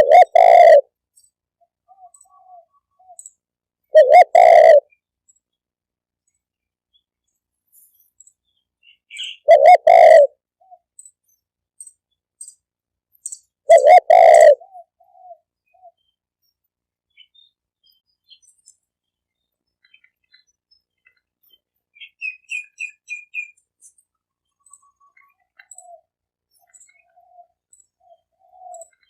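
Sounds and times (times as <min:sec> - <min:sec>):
dove cooing: 0:00.0 - 0:00.9, 0:01.8 - 0:03.3, 0:03.9 - 0:04.9, 0:09.1 - 0:10.8, 0:13.7 - 0:16.0, 0:24.8 - 0:29.0.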